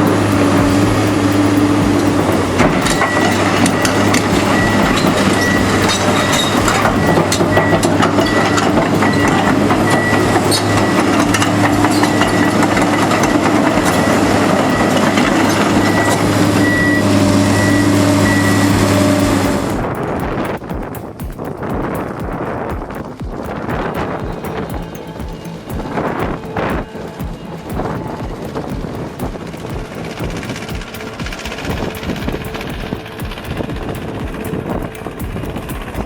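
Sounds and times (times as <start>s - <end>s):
backup alarm beeping: 0.0s - 19.8s
clanks and knocks: 0.0s - 19.9s
diesel engine running: 0.0s - 20.4s, 24.0s - 36.0s.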